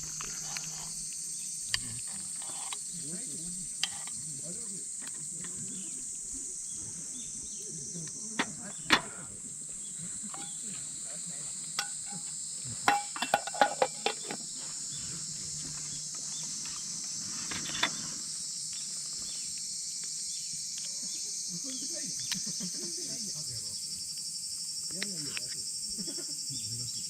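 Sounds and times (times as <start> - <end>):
crickets and insects chirping: 0.0 - 27.0
sharp clicks and clinks: 12.9 - 14.4.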